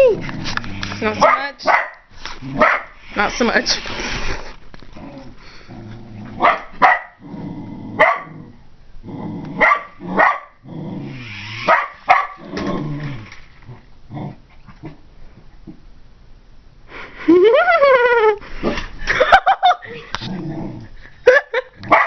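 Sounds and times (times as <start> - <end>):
dog growling: 0.0 - 1.5, 2.3 - 6.5, 7.2 - 11.2, 12.3 - 15.0, 20.1 - 21.1
dog barking: 1.2 - 2.0, 2.6 - 2.9, 6.4 - 7.2, 8.0 - 8.3, 9.6 - 10.6, 11.7 - 12.4.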